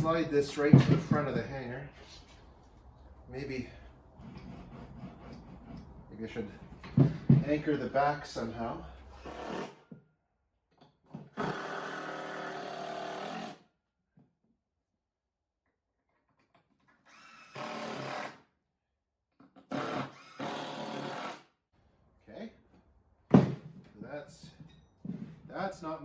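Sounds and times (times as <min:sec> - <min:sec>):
power drill driving screws into wood: 0:09.2 - 0:09.8, 0:11.3 - 0:13.6, 0:17.0 - 0:18.5, 0:19.6 - 0:21.5.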